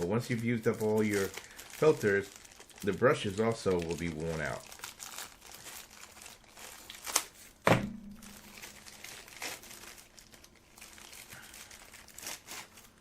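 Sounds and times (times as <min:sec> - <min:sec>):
sharp ringing knock: 0:07.7 - 0:08.3.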